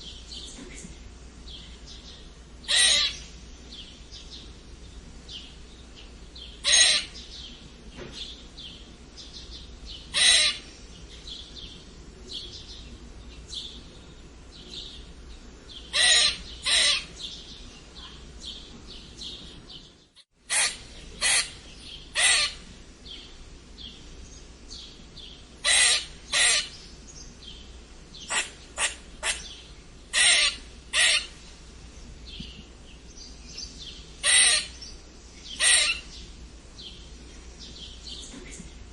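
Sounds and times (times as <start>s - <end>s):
squirrel squeaking: 2.7s - 3.2s, 6.6s - 7.2s, 10.1s - 10.7s, 15.9s - 17.1s, 20.5s - 22.6s, 25.6s - 26.8s, 28.2s - 31.3s, 34.2s - 34.8s, 35.6s - 36.1s.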